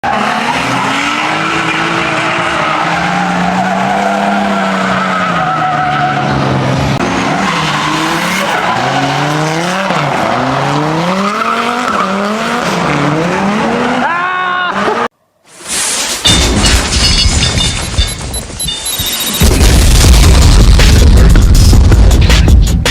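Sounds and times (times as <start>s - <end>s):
car engine under hard throttle: 5.6s - 14.0s.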